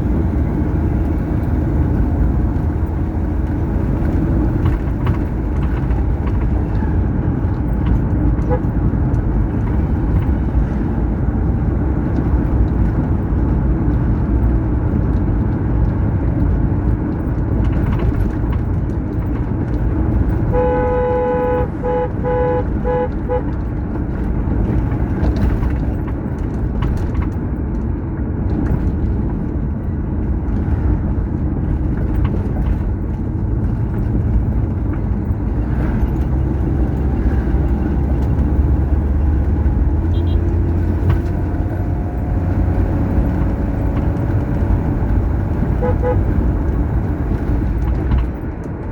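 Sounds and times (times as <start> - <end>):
vehicle road and engine rumble: 0.0 - 48.9
vehicle horn short toots: 8.4 - 8.8, 20.5 - 23.6, 40.1 - 40.5, 45.8 - 46.4.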